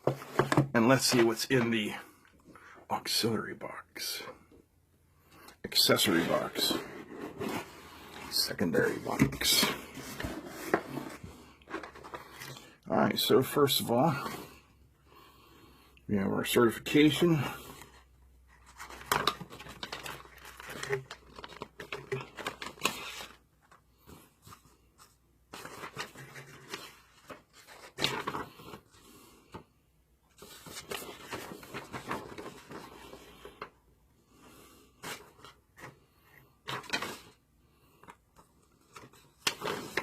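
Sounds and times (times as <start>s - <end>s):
paper rustling and crinkling: 6.1s - 12.7s, 17.7s - 29.6s, 30.3s - 33.7s, 36.6s - 37.4s, 38.0s - 40.0s.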